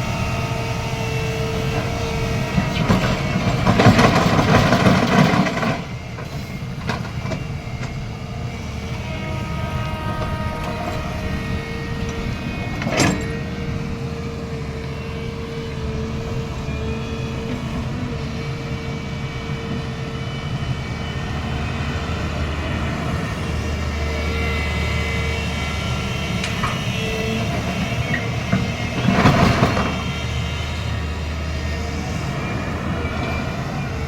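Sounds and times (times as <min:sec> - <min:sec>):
diesel machinery engine drone: 0:00.0 - 0:34.0.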